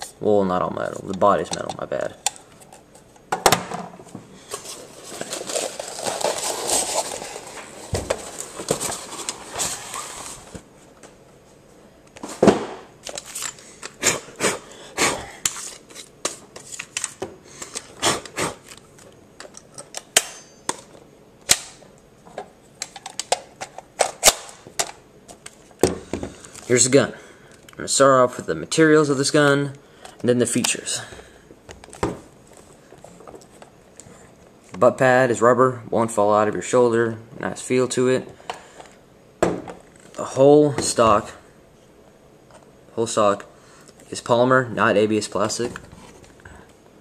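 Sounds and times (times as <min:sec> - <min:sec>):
clicks and knocks of handling: 0:01.1 - 0:03.6
rustling: 0:04.4 - 0:10.6.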